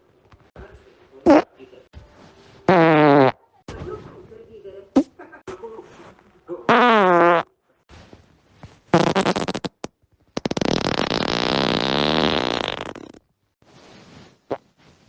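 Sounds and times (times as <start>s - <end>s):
person farting: 1.2s - 1.5s, 2.7s - 3.4s, 6.7s - 7.5s, 8.9s - 13.3s.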